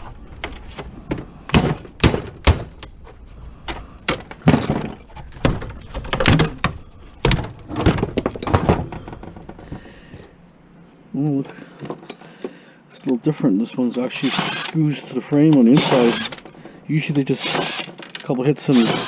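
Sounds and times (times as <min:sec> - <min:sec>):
metal clattering: 0:04.0 - 0:09.8.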